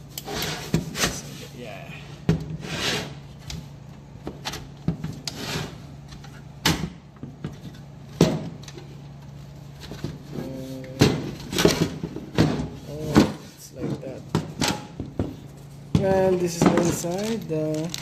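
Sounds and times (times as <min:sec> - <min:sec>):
computer case panel scraping: 0:05.3 - 0:05.9.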